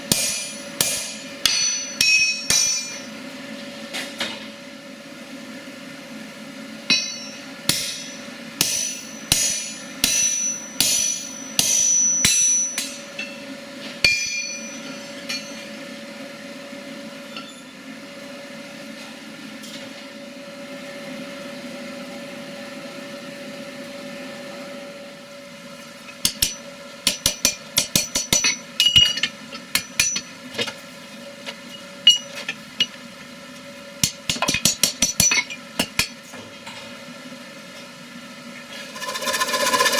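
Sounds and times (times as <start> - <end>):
hammer striking metal on anvil: 0.0 - 3.2, 6.9 - 15.8, 26.2 - 30.8, 31.7 - 33.0, 34.0 - 36.3
steady hum: 0.0 - 3.6, 6.9 - 13.4, 38.7 - 39.9.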